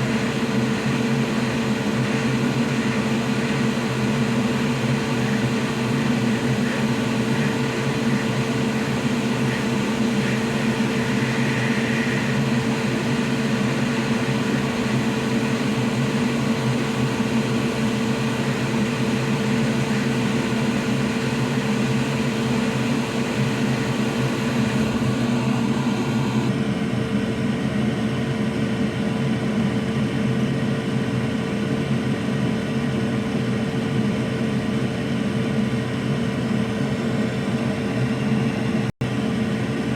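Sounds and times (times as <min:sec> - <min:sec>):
electric blower hum: 0:00.0 - 0:26.6.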